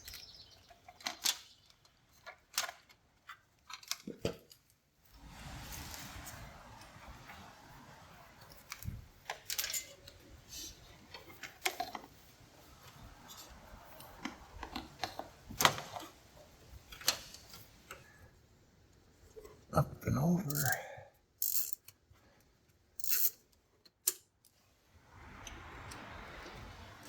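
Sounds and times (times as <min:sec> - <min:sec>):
parts and tools clicking: 0:00.0 - 0:04.8, 0:08.5 - 0:16.2, 0:21.4 - 0:22.0, 0:23.0 - 0:24.6.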